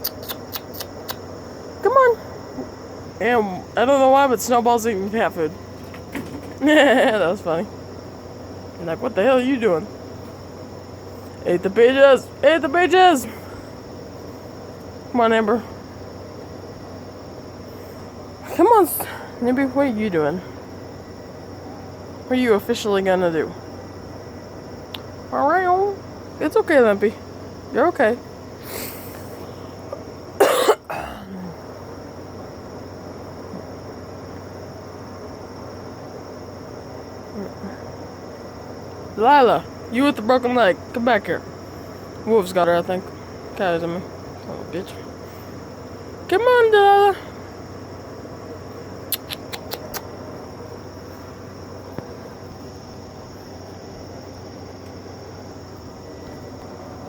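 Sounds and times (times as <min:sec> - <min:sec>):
sharp clicks: 0:00.0 - 0:01.2, 0:49.1 - 0:50.1
crickets chirring: 0:00.0 - 0:57.0
person coughing: 0:30.4 - 0:31.4.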